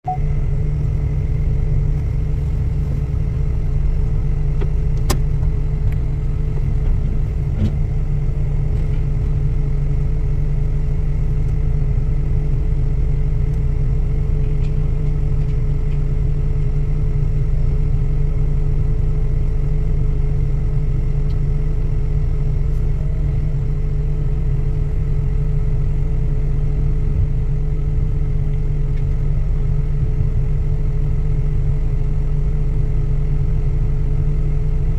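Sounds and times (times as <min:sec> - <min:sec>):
steady tone: 0:00.0 - 0:08.7
diesel engine running: 0:00.0 - 0:34.9.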